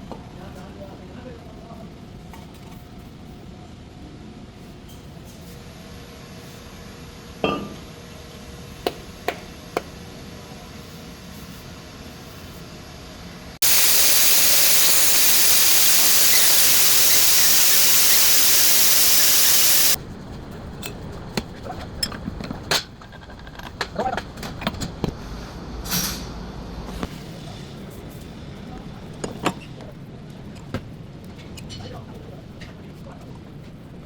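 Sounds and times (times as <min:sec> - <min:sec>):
loud steady hiss: 0:13.6 - 0:20.0.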